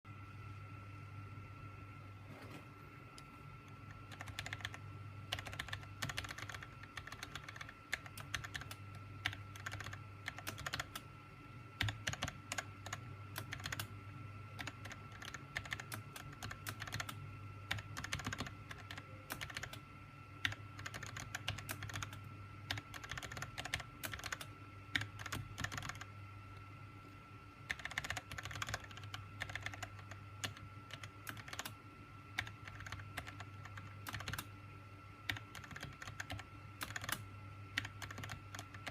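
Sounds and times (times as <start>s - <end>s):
faint steady hum: 0.0s - 38.9s
mechanical keyboard typing: 3.9s - 11.1s, 11.8s - 13.9s, 14.6s - 19.8s, 20.4s - 26.1s, 27.7s - 31.8s, 32.4s - 34.5s, 35.3s - 38.9s.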